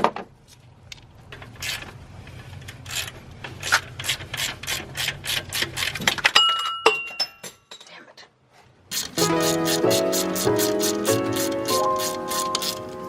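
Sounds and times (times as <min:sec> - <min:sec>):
sharp metallic clink: 0:06.4 - 0:07.9
socket ratchet clicking: 0:08.9 - 0:12.9.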